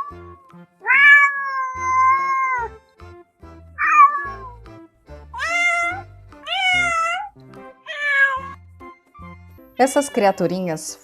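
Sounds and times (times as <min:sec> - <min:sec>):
background music with low notes: 0:00.0 - 0:11.0
cat meowing: 0:00.8 - 0:02.8, 0:03.8 - 0:04.6, 0:05.4 - 0:08.6.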